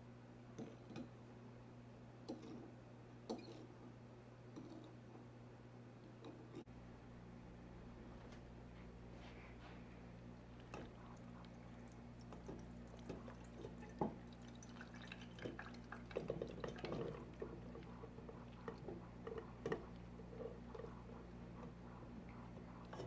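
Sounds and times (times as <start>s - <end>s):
low electrical hum: 0.0s - 23.0s
liquid dripping: 10.7s - 18.9s
liquid being poured: 10.8s - 19.0s.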